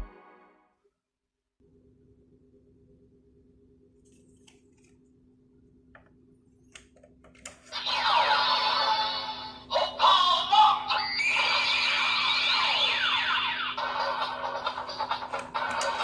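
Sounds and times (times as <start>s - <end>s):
plastic toy clicks: 15.3s - 16.0s.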